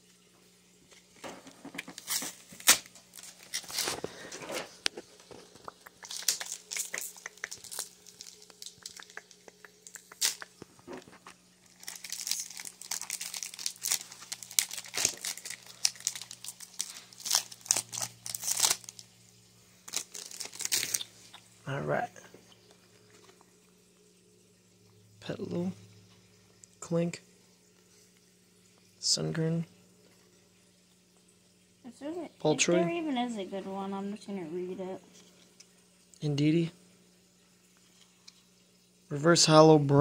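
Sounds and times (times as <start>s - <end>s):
foil wrapper tearing and crinkling: 1.8s - 4.3s, 5.4s - 19.1s, 19.8s - 21.2s.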